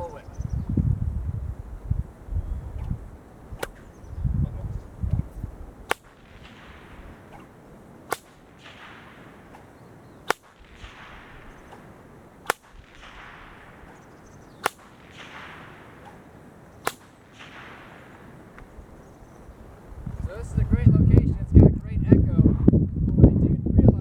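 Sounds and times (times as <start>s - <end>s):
whip cracking with echo: 2.8s - 4.0s, 5.8s - 19.4s.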